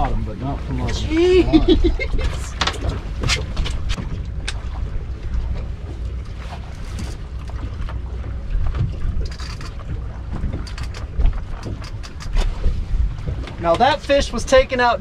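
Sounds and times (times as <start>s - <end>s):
wind buffeting microphone: 0.0s - 6.0s, 6.9s - 15.0s
sharp clicks and knocks: 8.7s - 12.5s.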